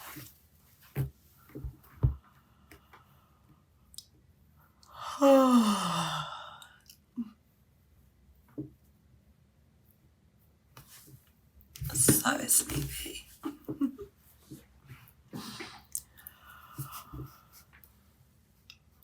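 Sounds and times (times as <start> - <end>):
woman yawning: 5.0 - 6.7.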